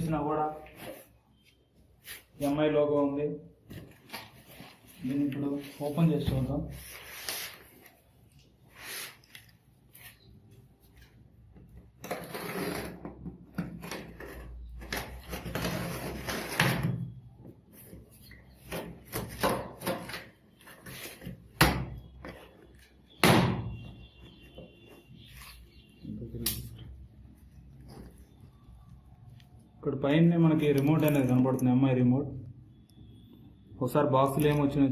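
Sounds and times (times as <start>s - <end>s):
cardboard box scraping and rubbing: 12.1s - 13.0s.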